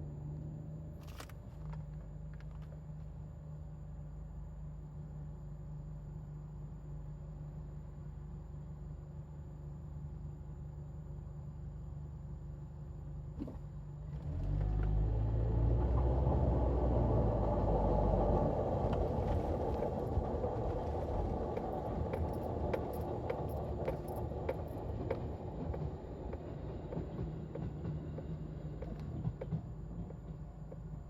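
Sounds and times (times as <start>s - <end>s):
car wheel bearing droning rumble: 15.7s - 31.0s.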